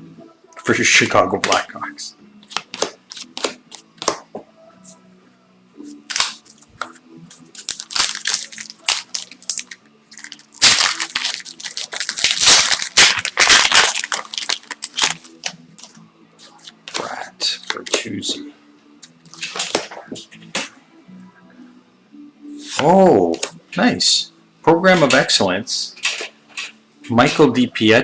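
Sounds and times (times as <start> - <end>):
foil wrapper crinkling: 7.5 - 15.9.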